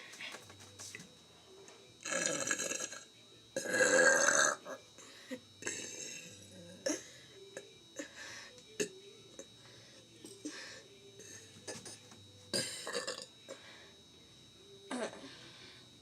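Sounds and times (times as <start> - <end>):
man burping: 12.5 - 13.3.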